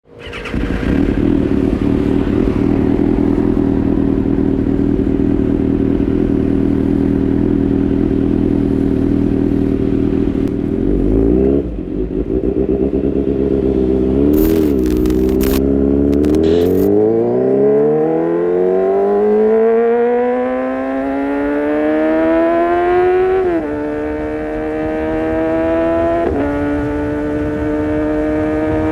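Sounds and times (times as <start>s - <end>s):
motorcycle engine revving: 12.2s - 18.4s.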